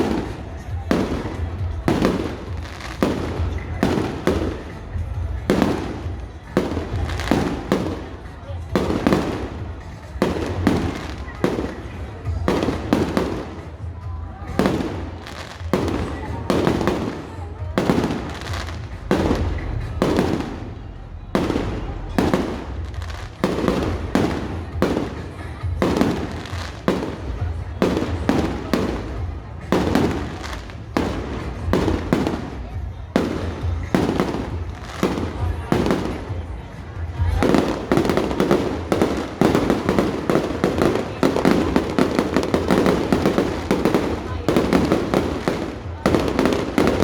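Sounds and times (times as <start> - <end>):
fireworks bangs: 0.0 - 47.0.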